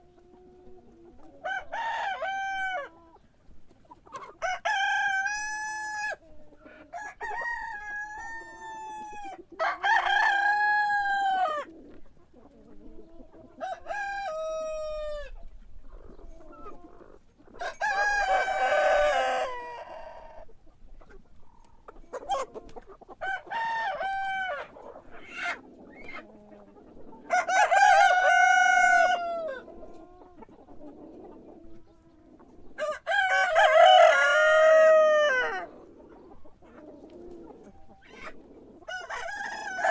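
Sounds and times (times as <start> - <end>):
rooster crowing: 9.6 - 11.6, 17.7 - 20.0, 27.3 - 29.6, 32.8 - 35.7, 38.9 - 39.9.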